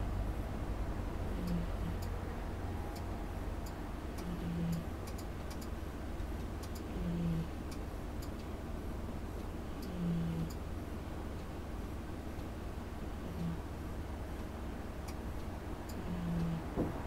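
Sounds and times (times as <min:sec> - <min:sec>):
cat snoring: 0:04.2 - 0:04.8, 0:06.9 - 0:07.5, 0:09.9 - 0:10.5, 0:16.0 - 0:16.7.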